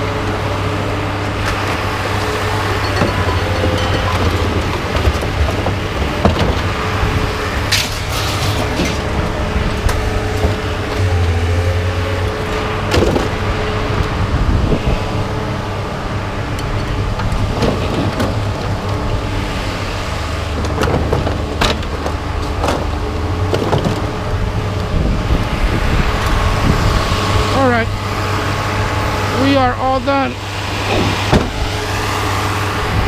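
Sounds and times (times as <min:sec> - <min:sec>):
scrap metal clanking: 0:01.5 - 0:09.2.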